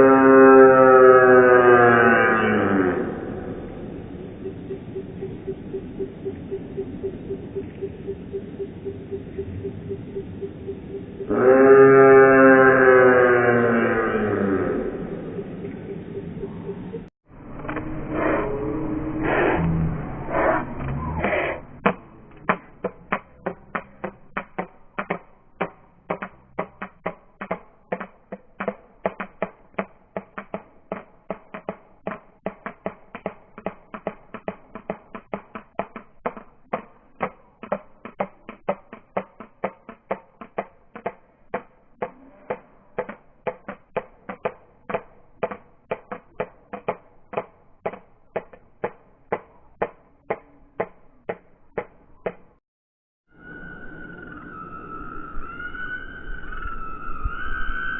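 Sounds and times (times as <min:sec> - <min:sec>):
stork bill clattering: 0:21.2 - 0:52.5.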